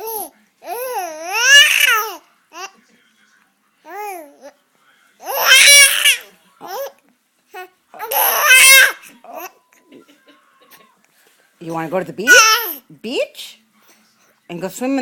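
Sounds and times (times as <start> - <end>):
baby babbling squeals: 0.0 - 2.7, 5.2 - 6.9, 8.0 - 9.5, 12.3 - 12.8.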